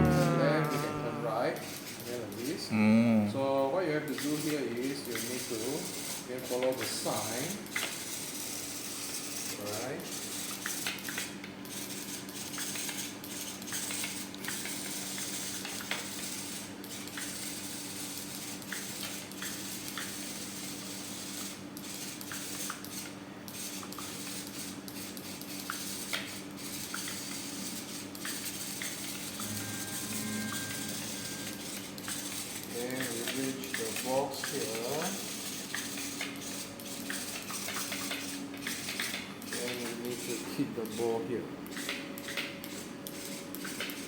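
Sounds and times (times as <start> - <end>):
steady low hum and hiss: 27.5 - 44.0.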